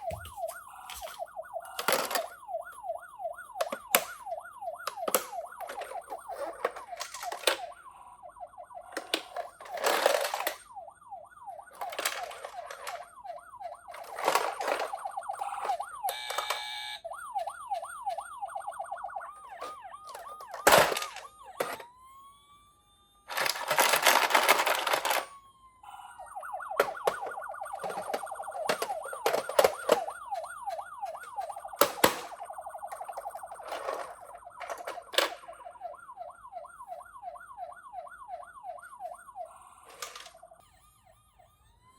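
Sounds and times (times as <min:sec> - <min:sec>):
toy ambulance siren wailing: 0:00.0 - 0:41.9
toy cars rattling down a slope: 0:11.8 - 0:13.0, 0:14.0 - 0:16.6, 0:19.5 - 0:21.9, 0:23.3 - 0:25.4, 0:26.8 - 0:30.1, 0:33.0 - 0:35.6, 0:39.9 - 0:40.9.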